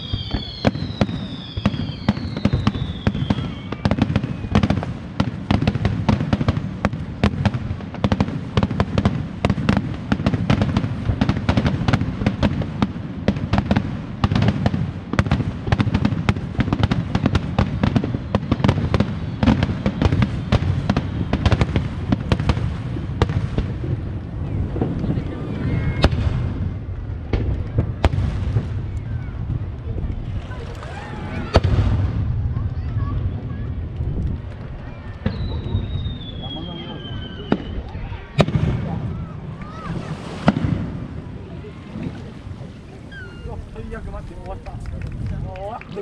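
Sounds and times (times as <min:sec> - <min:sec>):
falling firework whistle: 0:00.0 - 0:05.0, 0:17.6 - 0:22.6, 0:35.0 - 0:40.9, 0:43.0 - 0:44.2
fireworks crackling bursts: 0:00.0 - 0:46.0
low booming rumble: 0:20.0 - 0:39.6.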